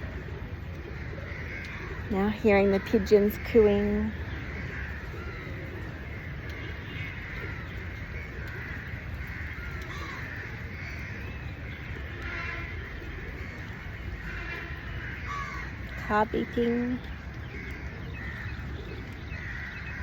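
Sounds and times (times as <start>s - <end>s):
birds calling: 0.0s - 20.0s
steady rain: 0.0s - 20.0s.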